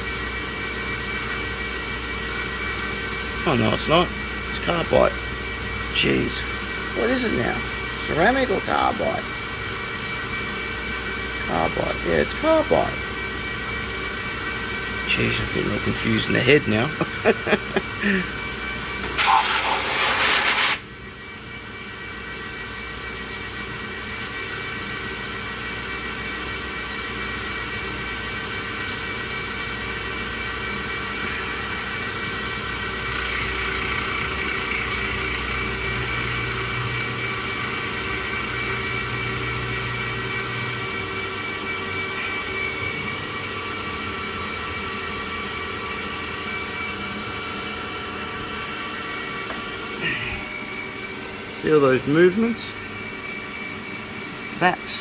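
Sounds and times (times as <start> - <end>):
low machine hum: 0.0 - 19.6
milling spindle whine: 0.0 - 55.0
loud hiss: 19.1 - 20.8.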